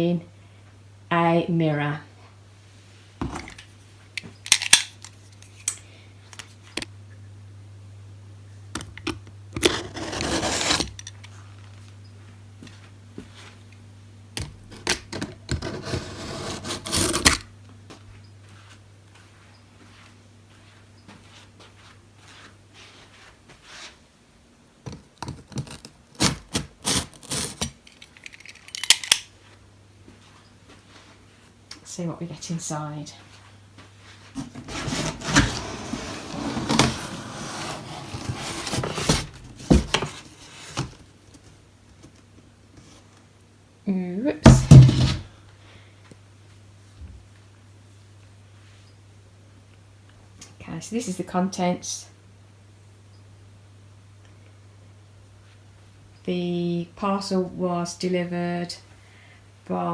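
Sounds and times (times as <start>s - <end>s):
packaging tearing and rustling: 16.4s - 17.4s, 25.5s - 29.2s.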